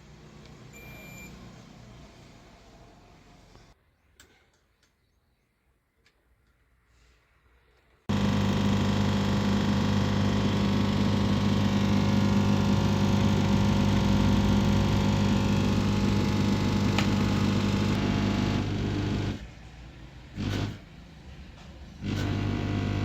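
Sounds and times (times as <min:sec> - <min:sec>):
engine idling: 0:08.1 - 0:19.4.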